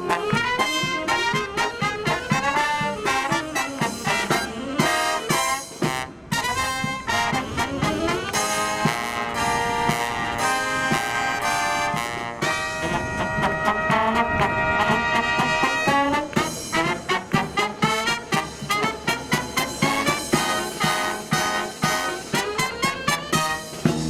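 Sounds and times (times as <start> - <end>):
drum beats: 0.0 - 14.2, 14.9 - 24.0
marching brass band playing: 0.0 - 24.0.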